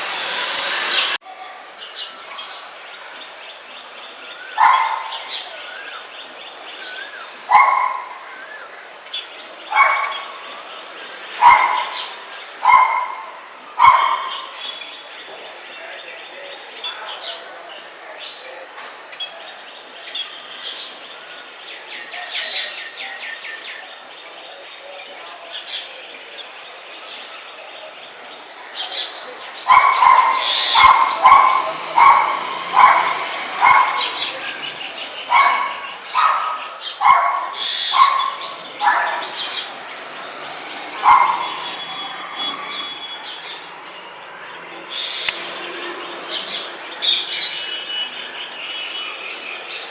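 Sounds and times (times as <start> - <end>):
birds chirping and trilling: 0.0 - 1.2, 1.8 - 49.9
dog barking: 4.6 - 5.4, 7.5 - 8.3, 9.7 - 10.4, 11.4 - 14.6, 29.3 - 42.9.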